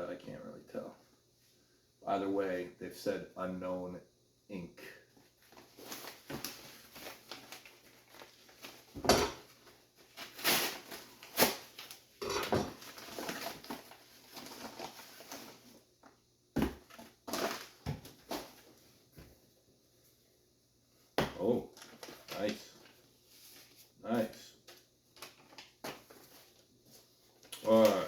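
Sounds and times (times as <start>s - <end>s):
package packaging rustling and tearing: 5.4s - 15.8s, 16.8s - 18.6s, 21.7s - 23.8s, 24.7s - 26.6s, 27.4s - 28.0s.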